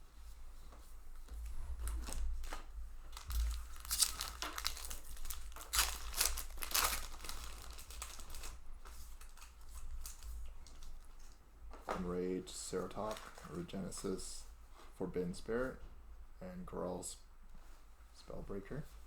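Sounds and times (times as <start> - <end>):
foil wrapper crinkling and tearing: 1.8 - 11.4, 12.8 - 13.6.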